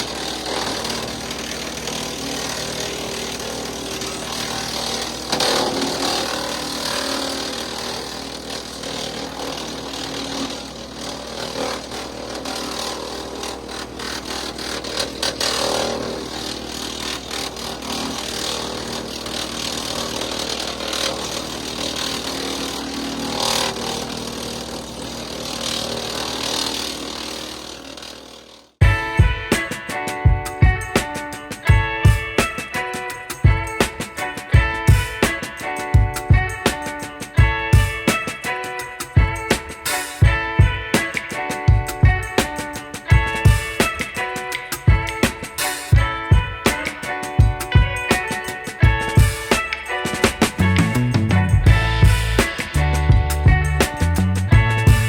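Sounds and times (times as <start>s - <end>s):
wood chipper chipping wood: 0.0s - 28.7s.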